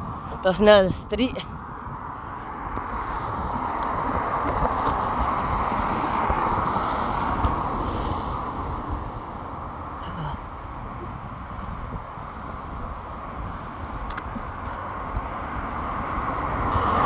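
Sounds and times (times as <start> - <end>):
wind on microphone: 0.0 - 17.0
tyres hissing on wet road: 5.6 - 9.6.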